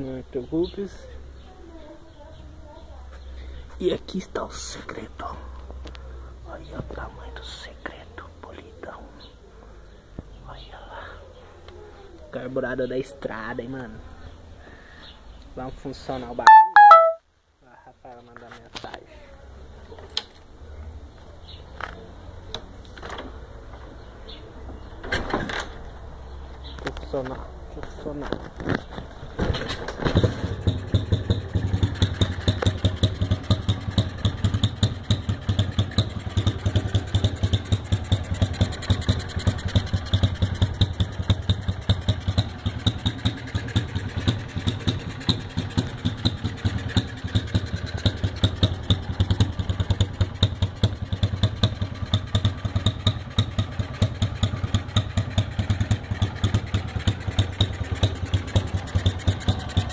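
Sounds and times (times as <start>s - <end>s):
motorcycle engine idling: 30.2s - 59.9s.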